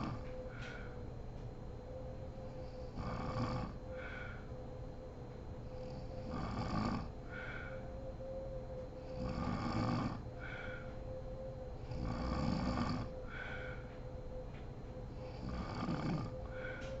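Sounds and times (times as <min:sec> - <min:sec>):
woman snoring: 0:00.0 - 0:00.8, 0:02.6 - 0:04.4, 0:05.8 - 0:07.8, 0:09.0 - 0:10.8, 0:11.8 - 0:13.8, 0:15.2 - 0:16.9
low hum: 0:00.0 - 0:17.0.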